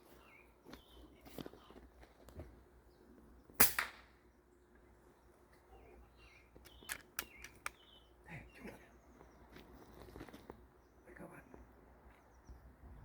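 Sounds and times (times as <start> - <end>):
air rifle shot: 3.6 - 4.1.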